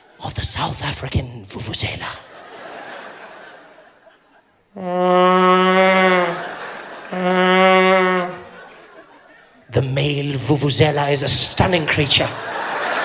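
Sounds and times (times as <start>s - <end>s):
vuvuzela blast: 4.8s - 8.7s.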